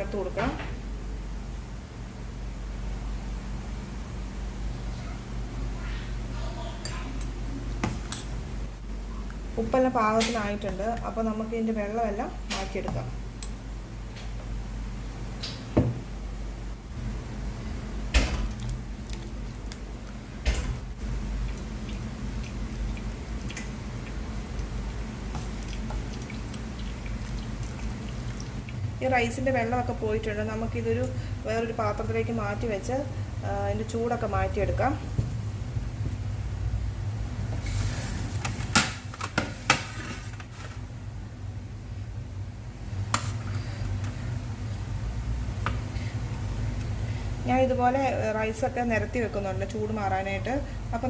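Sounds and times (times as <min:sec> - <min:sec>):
steady low hum: 0:00.0 - 0:51.0
water dripping and ticking: 0:21.4 - 0:28.9.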